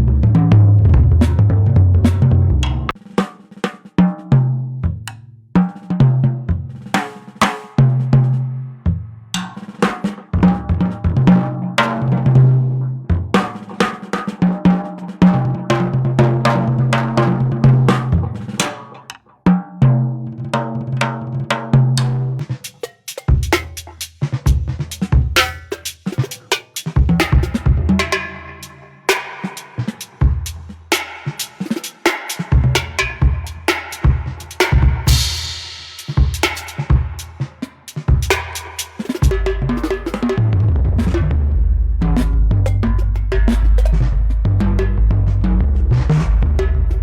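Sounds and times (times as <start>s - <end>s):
jazz drum kit playing: 0.0s - 3.1s, 22.4s - 47.0s.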